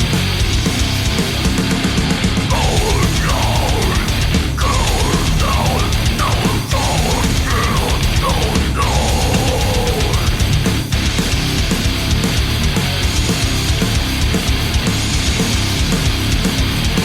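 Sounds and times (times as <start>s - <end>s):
heavy metal music: 0.0s - 17.0s.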